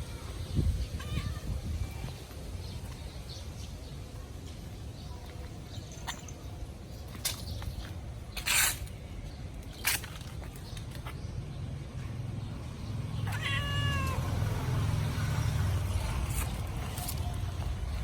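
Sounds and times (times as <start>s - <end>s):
cat meowing: 0.9s - 1.7s, 13.2s - 14.5s.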